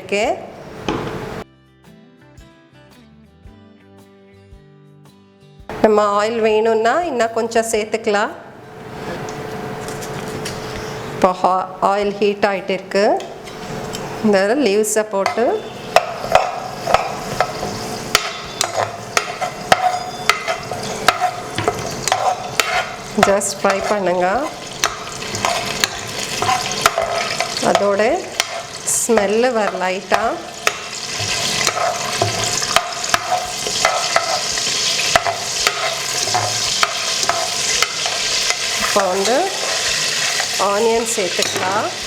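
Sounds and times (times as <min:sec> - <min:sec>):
spoon knocking metal pot: 0:15.2 - 0:39.5
leaves frying in hot oil: 0:15.8 - 0:42.0.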